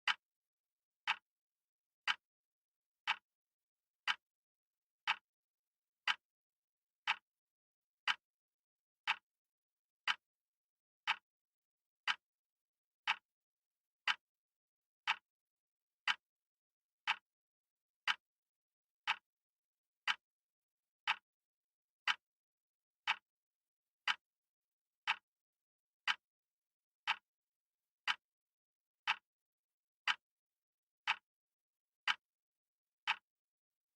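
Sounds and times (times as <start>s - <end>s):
clock ticks: 0.0s - 0.2s, 1.0s - 1.3s, 2.0s - 2.3s, 3.0s - 3.3s, 4.0s - 4.3s, 5.0s - 5.3s, 6.0s - 6.3s, 7.0s - 7.3s, 8.0s - 8.3s, 9.0s - 9.3s, 10.0s - 10.3s, 11.0s - 11.3s, 12.0s - 12.3s, 13.0s - 13.3s, 14.0s - 14.3s, 15.0s - 15.3s, 16.0s - 16.3s, 17.0s - 17.3s, 18.0s - 18.3s, 19.0s - 19.3s, 20.0s - 20.3s, 21.0s - 21.3s, 22.0s - 22.4s, 23.0s - 23.3s, 24.0s - 24.3s, 25.0s - 25.3s, 26.0s - 26.3s, 27.0s - 27.3s, 28.0s - 28.3s, 29.0s - 29.4s, 30.0s - 30.3s, 31.0s - 31.4s, 32.0s - 32.3s, 33.0s - 33.4s.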